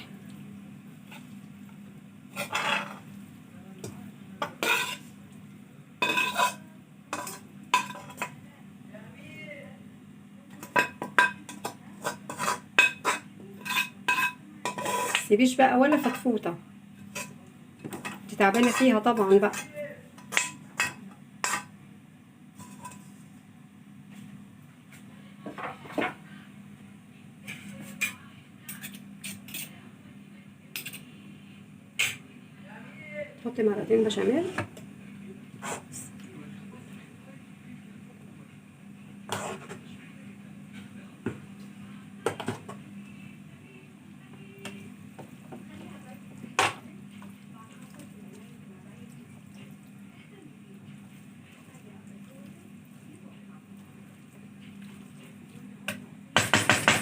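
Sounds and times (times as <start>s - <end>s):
spoon scraping a pan: 2.3s - 3.1s, 4.4s - 5.2s, 6.0s - 8.3s, 10.6s - 15.3s, 17.0s - 21.7s, 22.6s - 23.2s, 27.5s - 29.8s, 39.3s - 39.8s
spoon knocking on pan: 55.9s - 57.0s.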